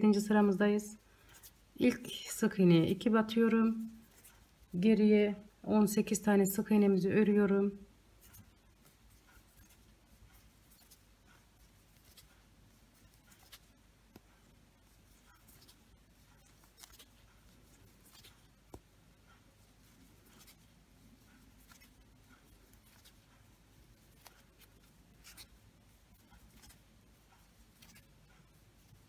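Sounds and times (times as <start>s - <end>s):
crochet hook clicking: 13.0s - 28.6s.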